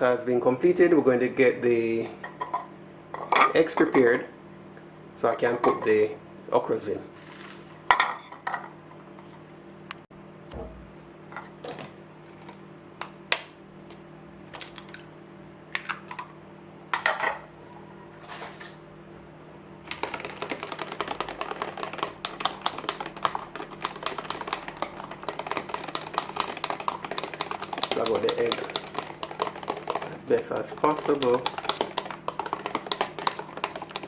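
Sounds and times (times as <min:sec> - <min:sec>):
kitchenware knocks and clinks: 0:18.2 - 0:18.8
fork beating egg in bowl: 0:20.0 - 0:34.0.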